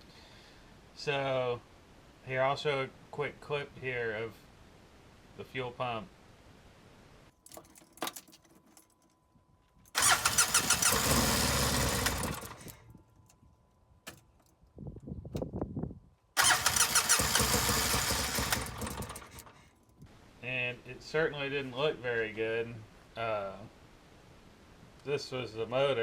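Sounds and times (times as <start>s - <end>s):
engine cranking on starter: 9.9s - 12.8s, 16.4s - 19.7s.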